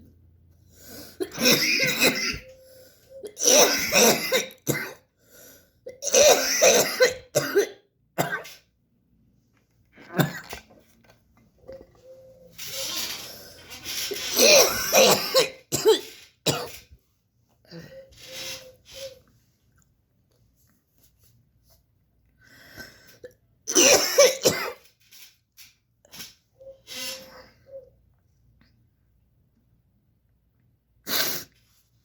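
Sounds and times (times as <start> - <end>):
person clearing throat: 1.2 - 2.5, 3.3 - 5.0, 5.9 - 8.5, 10.0 - 10.8, 14.1 - 16.8
person coughing: 1.2 - 2.5, 3.2 - 5.1, 5.9 - 8.6, 10.0 - 10.7, 14.1 - 16.8, 23.7 - 24.8.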